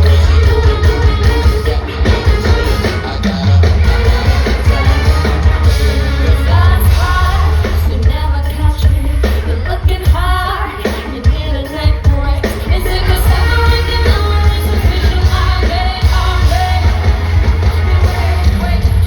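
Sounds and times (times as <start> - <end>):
heavy bass line: 0.0 - 10.9, 11.9 - 19.0
live pop music: 0.0 - 19.0
woman singing: 6.2 - 19.0.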